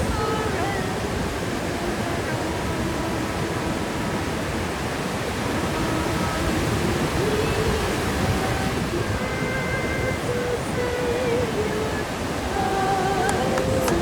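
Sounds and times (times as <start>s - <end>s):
ocean surf: 0.0s - 14.0s
wind roaring: 0.0s - 14.0s
faint voices: 8.3s - 14.0s.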